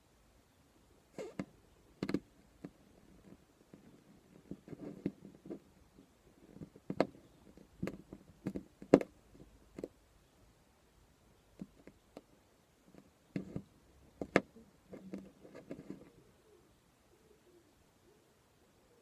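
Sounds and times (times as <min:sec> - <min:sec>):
irregular sharp clicks and knocks: 0:06.5 - 0:10.0.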